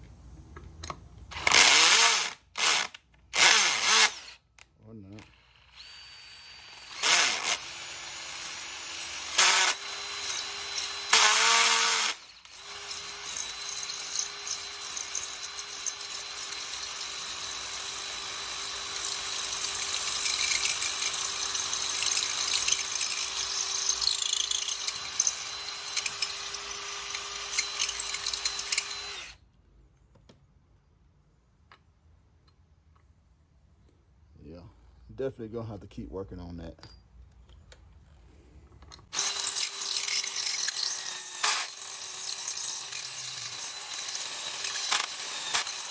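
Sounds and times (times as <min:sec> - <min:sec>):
electric drill cutting into aluminum: 0:01.3 - 0:04.5, 0:05.2 - 0:29.4, 0:39.1 - 0:45.9.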